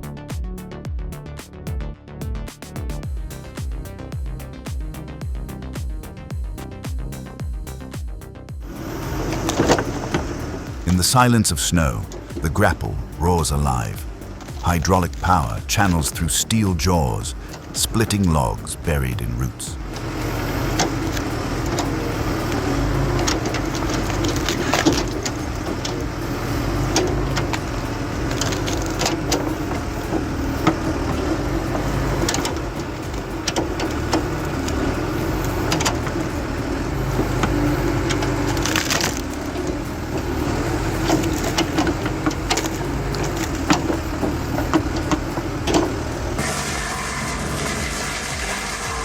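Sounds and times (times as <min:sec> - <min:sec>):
excavator engine and hydraulics: 0:03.1 - 0:49.0
wood splintering cracks: 0:19.9 - 0:48.8.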